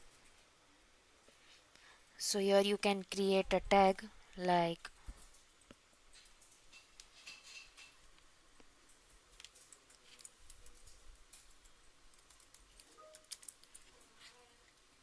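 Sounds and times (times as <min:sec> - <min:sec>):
faint keyboard typing: 0:08.6 - 0:14.9.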